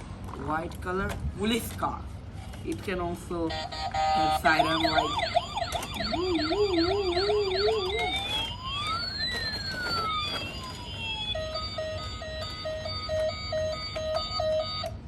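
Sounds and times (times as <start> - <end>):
toy police siren: 3.5 - 15.0
rapid electronic beeping: 3.9 - 13.4.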